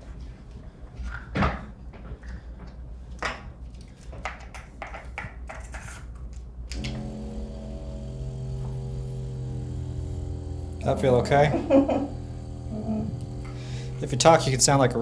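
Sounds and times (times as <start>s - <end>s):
massage gun motor hum: 6.7s - 15.0s.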